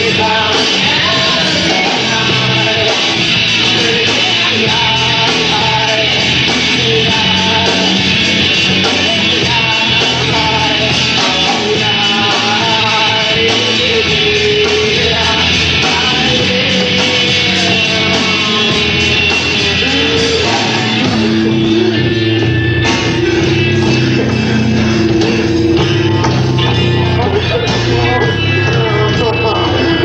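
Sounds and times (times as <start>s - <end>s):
live rock band playing: 0.0s - 30.0s.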